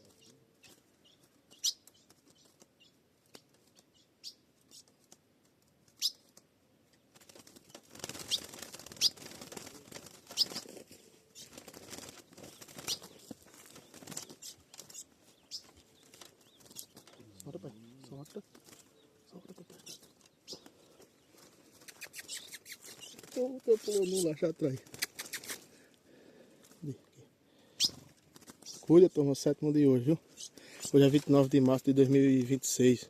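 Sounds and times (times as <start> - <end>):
bird wings fluttering: 7.1 - 17.3, 18.2 - 19.1, 19.8 - 25.8, 27.8 - 28.9.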